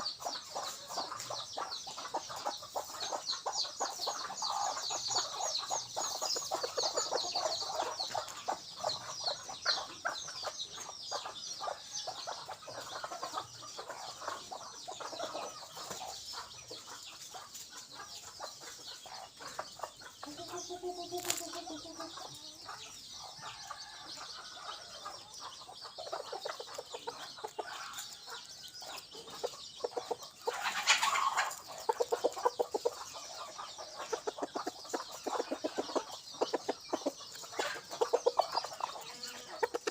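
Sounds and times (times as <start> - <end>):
rooster clucking: 0.0 - 10.2, 29.0 - 39.9.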